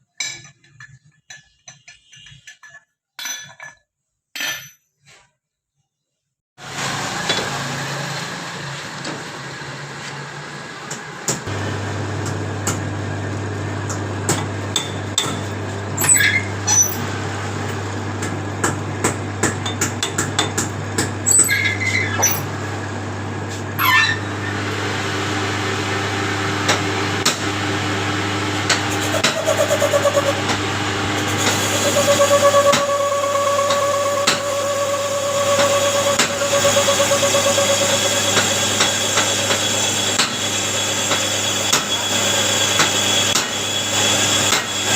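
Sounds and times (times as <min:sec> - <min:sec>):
steady higher whine: 0:26.7 - 0:38.8.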